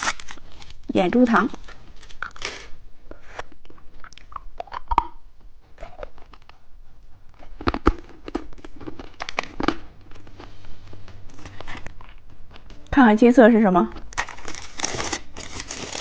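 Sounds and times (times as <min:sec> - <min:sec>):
plastic packaging crinkling: 0:00.0 - 0:02.7, 0:07.6 - 0:10.2, 0:14.0 - 0:16.0.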